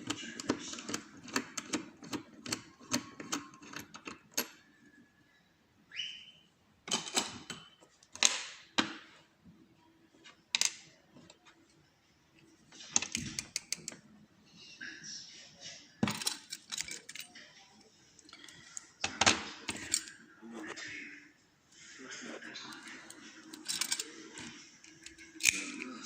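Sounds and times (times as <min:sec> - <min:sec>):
sharp metallic lock clicks: 0:24.9 - 0:25.9.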